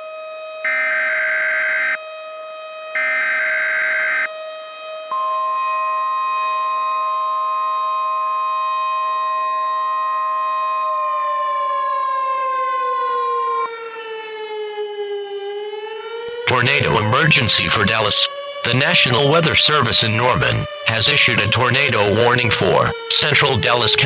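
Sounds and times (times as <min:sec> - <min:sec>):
emergency alert header burst: 0:00.0 - 0:02.0, 0:02.8 - 0:09.0, 0:16.2 - 0:24.0
steady warning alarm tone: 0:00.0 - 0:24.0
tornado siren wailing: 0:00.0 - 0:24.0.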